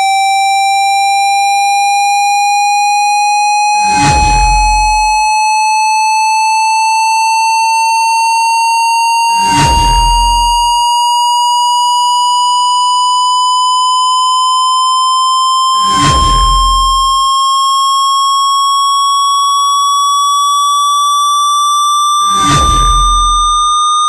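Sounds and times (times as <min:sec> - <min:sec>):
pure sine tone gliding upward: 0:03.7 - 0:21.2, 0:21.9 - 0:23.9
noisy burst with deep rumble: 0:03.9 - 0:05.3, 0:09.4 - 0:10.8, 0:15.8 - 0:17.3, 0:22.2 - 0:23.7.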